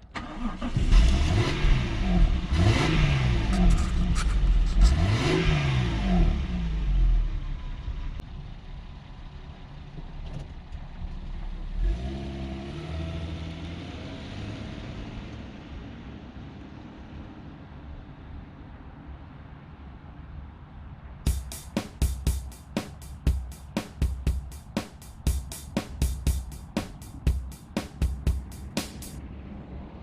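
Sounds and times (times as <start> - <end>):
car engine revving and idling: 0.2 - 16.4.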